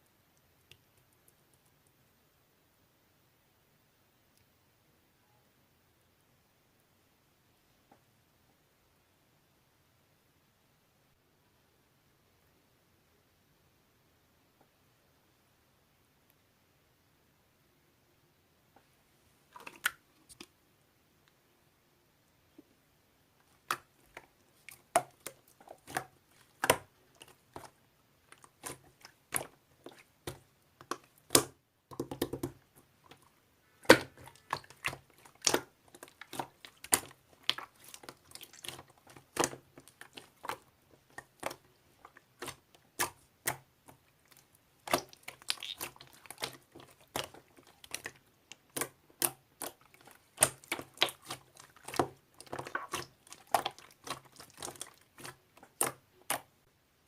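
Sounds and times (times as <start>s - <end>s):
slime squelch: 19.4s - 20.6s, 23.4s - 56.7s.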